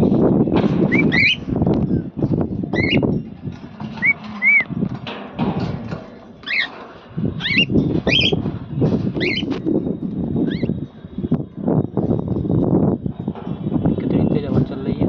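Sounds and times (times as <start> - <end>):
wind buffeting microphone: 0.0 - 15.0
cockatiels chirping: 0.9 - 1.4, 2.7 - 3.0, 4.0 - 4.6, 6.4 - 6.8, 7.4 - 8.4, 9.2 - 9.6, 10.4 - 10.7.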